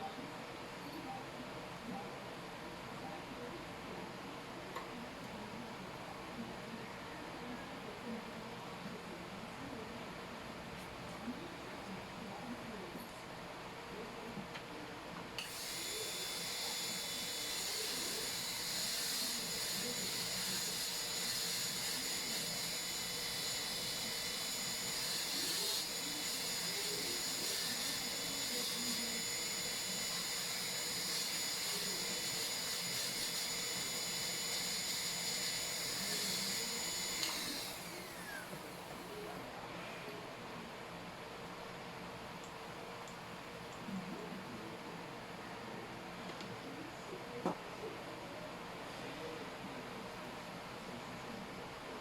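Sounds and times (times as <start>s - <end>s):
dental drill whining: 15.4s - 39.0s.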